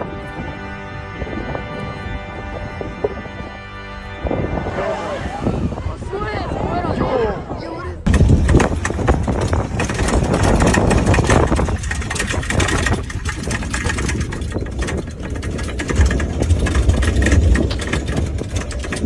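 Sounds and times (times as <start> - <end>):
vehicle engine running: 8.0 - 19.0.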